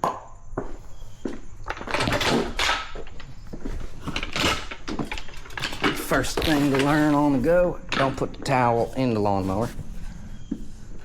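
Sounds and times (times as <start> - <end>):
mower clunks: 4.1 - 8.6
reel mower rattling: 4.1 - 9.3.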